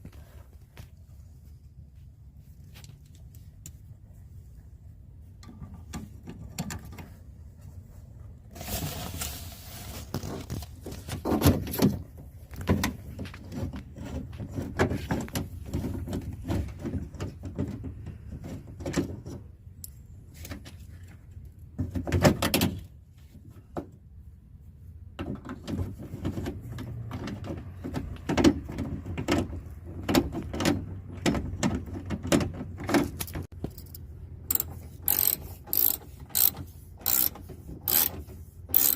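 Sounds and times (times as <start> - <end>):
metal parts clicking and rattling: 33.0 - 38.9.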